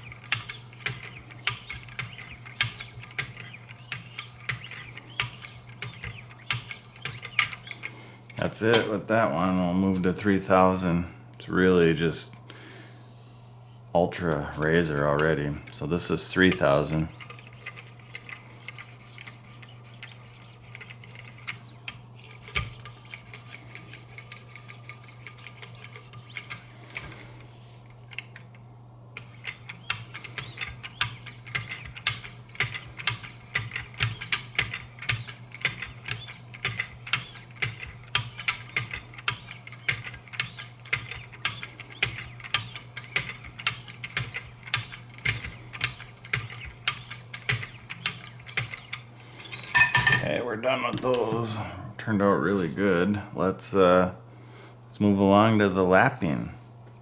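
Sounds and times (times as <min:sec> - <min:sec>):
sharpening stones stroking knife: 0:00.0 - 0:07.9, 0:16.5 - 0:26.7
sharpener arms clicking: 0:00.0 - 0:08.9, 0:29.2 - 0:49.1.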